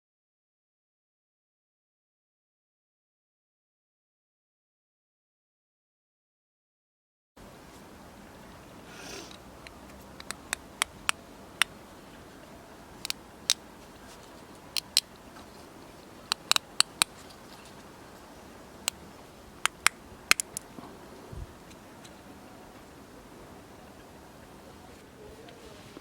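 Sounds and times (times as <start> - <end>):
small hard objects clicking and tapping: 9.3 - 11.8, 14.6 - 17.8, 19.6 - 20.8.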